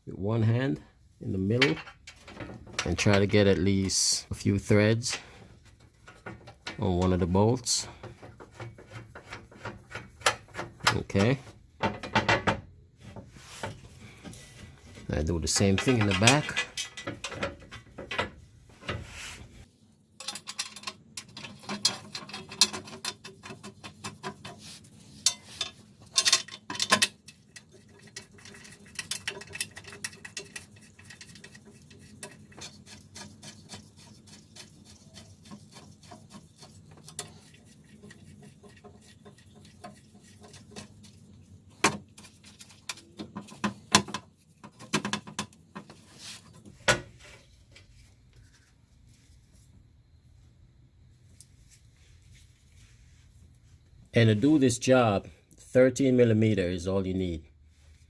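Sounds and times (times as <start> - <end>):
wrench clicking and scraping bolts: 5.0 - 11.4, 15.2 - 18.3, 20.2 - 41.1.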